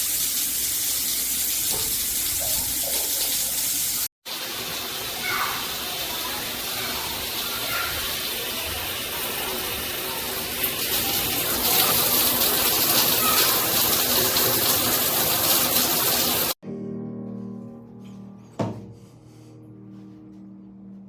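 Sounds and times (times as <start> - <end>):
shower head spraying water: 0.0 - 16.6.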